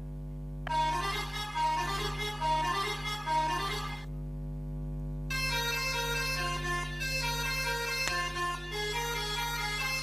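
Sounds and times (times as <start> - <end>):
melodica melody: 0.7 - 4.1, 5.3 - 10.0
steady low drone: 5.3 - 10.0.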